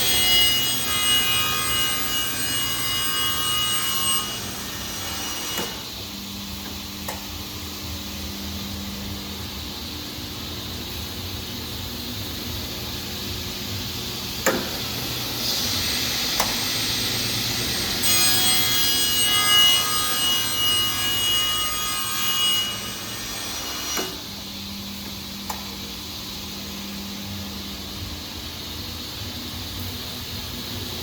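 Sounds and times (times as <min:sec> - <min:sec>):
band saw running: 0:15.2 - 0:24.4.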